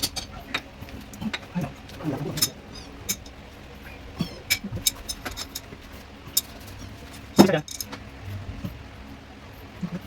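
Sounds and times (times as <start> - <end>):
small metallic clinks: 4.5 - 5.7, 7.4 - 8.0.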